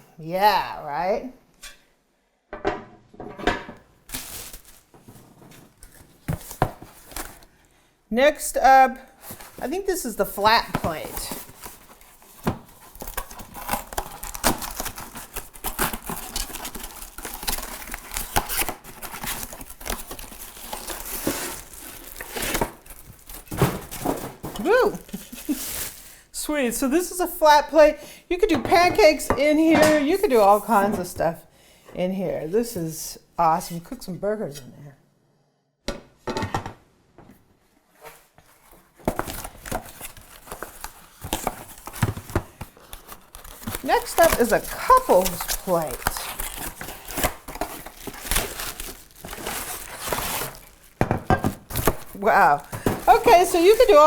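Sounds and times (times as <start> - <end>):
packaging wrap tearing and crinkling: 4.0 - 7.5, 10.4 - 26.2, 39.2 - 54.0.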